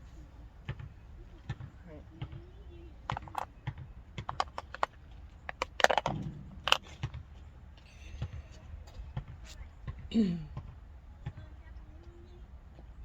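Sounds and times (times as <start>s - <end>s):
small parts and tools clicking: 4.3s - 4.9s, 5.5s - 6.9s.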